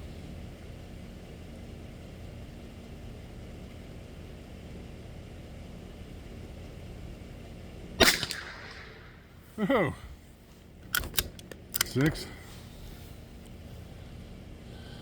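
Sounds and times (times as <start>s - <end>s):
steady low rumble: 0.0s - 15.0s
rifle shot: 8.0s - 9.3s.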